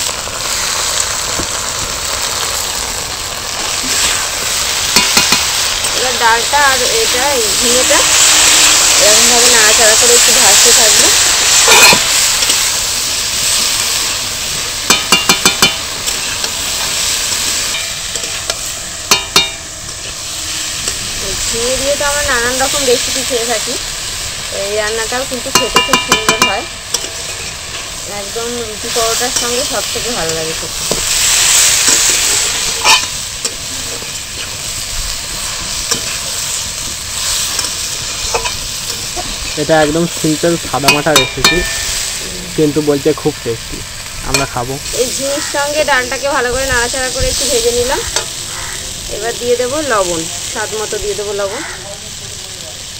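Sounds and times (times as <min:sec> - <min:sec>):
vegetables sizzling in hot oil: 0:00.0 - 0:52.9
spoon knocking against pan: 0:05.0 - 0:05.5, 0:14.9 - 0:15.8, 0:25.5 - 0:26.7, 0:40.9 - 0:41.9
utensil scraping and knocking pan: 0:11.6 - 0:12.1, 0:32.7 - 0:34.1.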